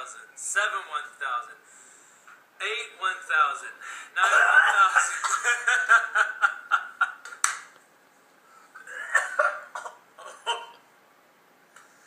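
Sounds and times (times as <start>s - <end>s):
people laughing: 4.2s - 7.5s.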